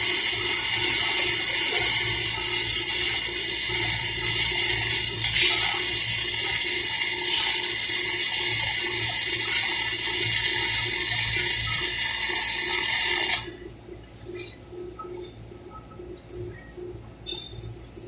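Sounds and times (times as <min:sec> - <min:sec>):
welding arc hissing: 0:00.0 - 0:13.4.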